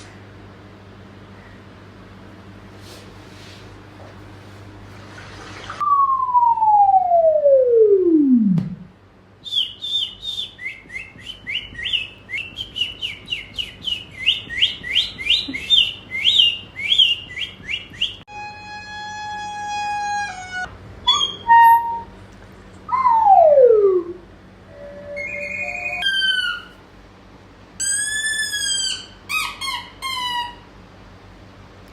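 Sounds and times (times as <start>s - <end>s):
whistle sliding down in pitch: 5.8s - 7.8s, 18.3s - 22.1s, 22.9s - 26.7s
held whistle-like tone: 5.8s - 8.2s, 9.4s - 22.1s, 22.9s - 26.8s
rapid bird-like chirping: 9.6s - 18.2s, 25.0s - 26.8s.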